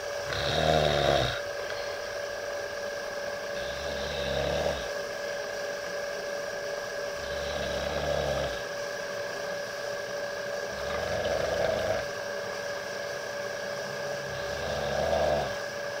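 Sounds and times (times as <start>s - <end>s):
pet snoring: 0.0s - 1.5s, 3.5s - 5.0s, 7.2s - 8.7s, 10.6s - 12.2s, 14.1s - 15.7s
high-pitched hum: 0.0s - 16.0s.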